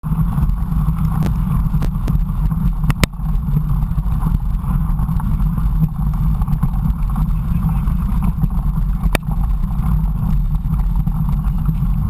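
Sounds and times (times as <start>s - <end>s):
bike tyres rolling: 0.0s - 12.0s
wind rumble: 0.0s - 12.0s
sharp clicks and knocks: 0.4s - 3.2s, 9.0s - 9.5s.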